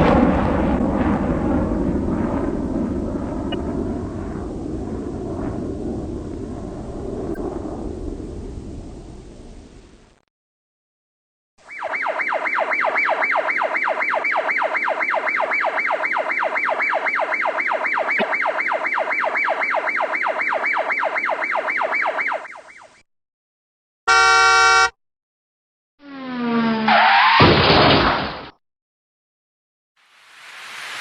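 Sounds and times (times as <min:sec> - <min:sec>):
electronic siren yelping: 0:11.6 - 0:23.0.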